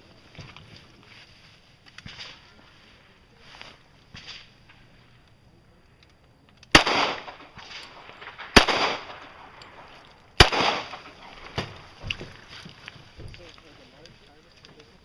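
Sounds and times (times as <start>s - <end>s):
loud gunshots with echo: 6.7s - 9.6s, 10.4s - 11.7s
faint gunshot: 6.8s - 9.3s, 10.4s - 11.8s.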